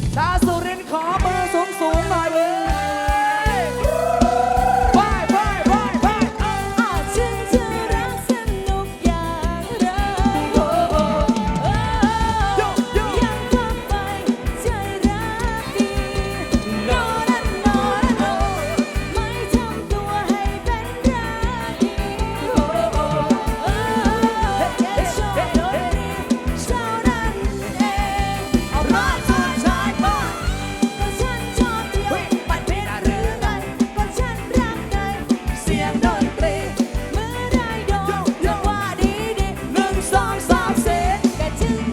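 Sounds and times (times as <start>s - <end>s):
fast steady drum beat: 0.0s - 41.9s
live band music: 0.0s - 41.9s
wavering lead melody: 0.9s - 41.9s.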